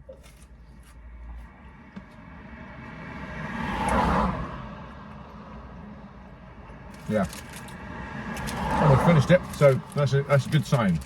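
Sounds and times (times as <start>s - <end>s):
vehicle passing by: 2.2s - 5.7s, 7.0s - 11.0s.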